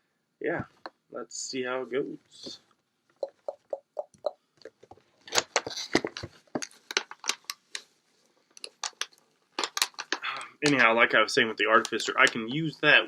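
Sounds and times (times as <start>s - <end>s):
packaging crackling and crinkling: 4.7s - 11.0s.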